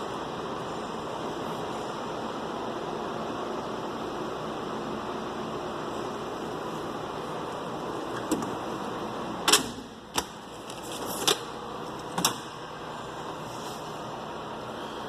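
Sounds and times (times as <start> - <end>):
metal drawers opening and shutting: 8.0 - 8.8, 9.4 - 12.6
metal clunks and clicks: 8.1 - 8.6, 9.4 - 12.6.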